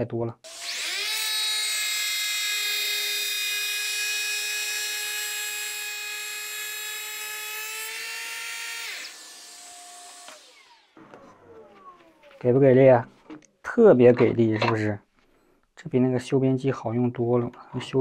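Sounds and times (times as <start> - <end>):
electric planer whining: 0.5 - 12.6
fainter whine: 10.3 - 13.6.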